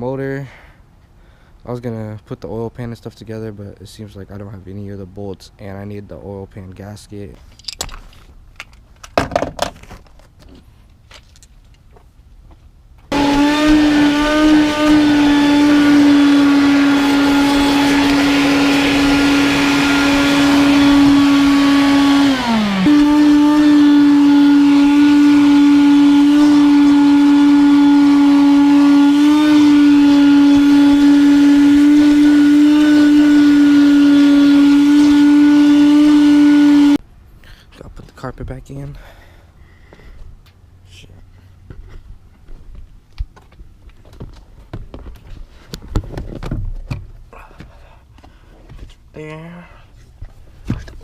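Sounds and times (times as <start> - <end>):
vacuum cleaner running: 13.1 - 37.0.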